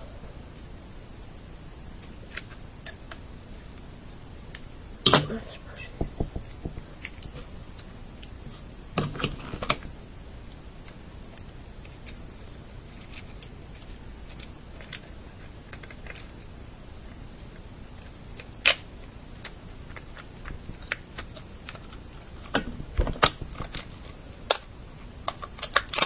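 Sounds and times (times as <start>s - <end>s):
plastic clicks and knocks: 6.0s - 7.3s.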